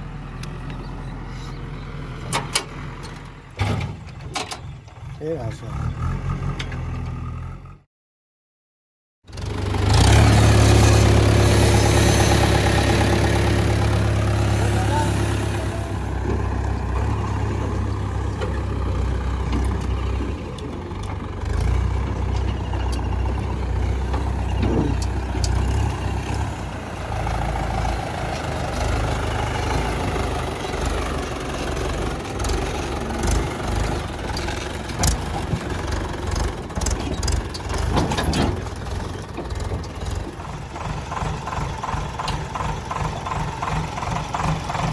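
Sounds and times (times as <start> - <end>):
diesel engine of heavy machinery: 0.0 - 7.8, 9.3 - 44.9
knocks and clanks: 33.3 - 40.4.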